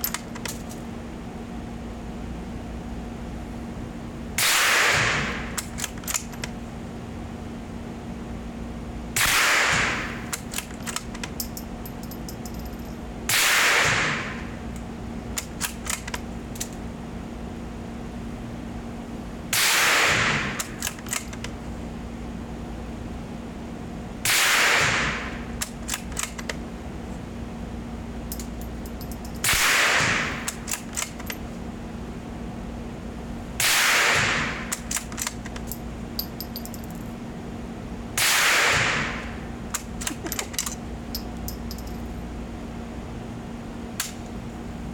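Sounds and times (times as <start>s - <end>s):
rifle bolt clicks: 25.6s - 26.6s, 34.7s - 36.7s
suppressed rifle shots: 38.2s - 39.2s.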